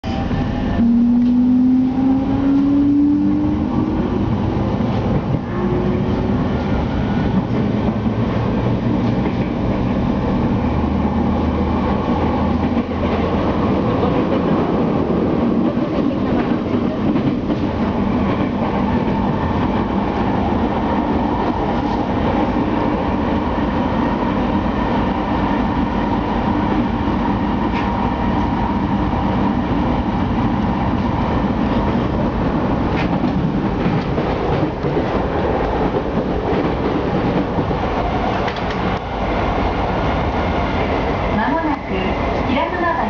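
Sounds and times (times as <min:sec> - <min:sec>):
wheels rumbling on rails: 0:00.0 - 0:43.0.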